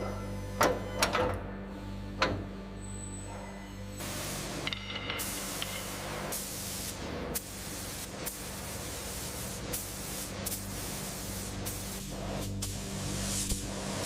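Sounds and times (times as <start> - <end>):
steady low hum: 0.0 - 14.0
hissing spray: 4.0 - 14.0.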